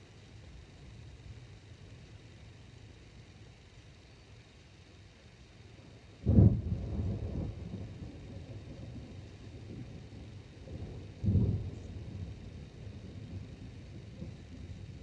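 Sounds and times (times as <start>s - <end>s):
thunder cracking and rumbling: 6.2s - 15.0s.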